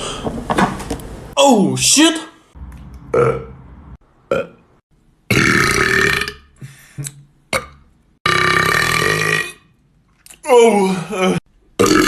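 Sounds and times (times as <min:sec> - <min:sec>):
person belching: 0:05.3 - 0:06.5, 0:07.5 - 0:09.6, 0:11.1 - 0:12.0.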